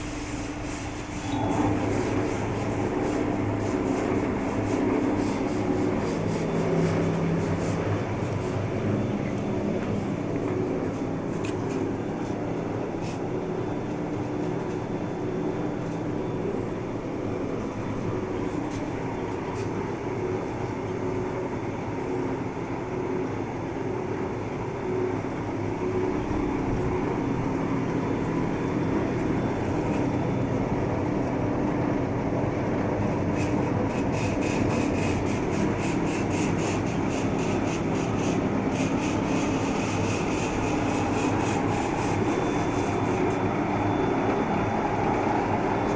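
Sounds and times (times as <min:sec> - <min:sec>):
lathe humming: 0:00.0 - 0:13.4, 0:34.0 - 0:45.9.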